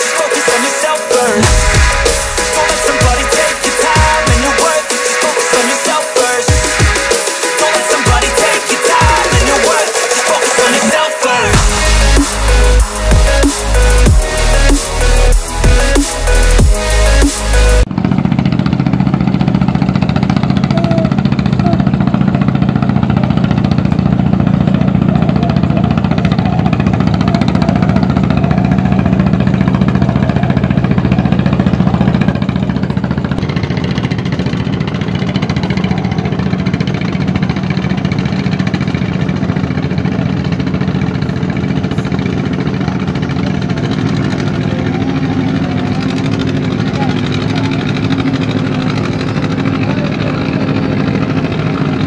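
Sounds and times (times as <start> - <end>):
boat engine running: 0.0 - 52.0.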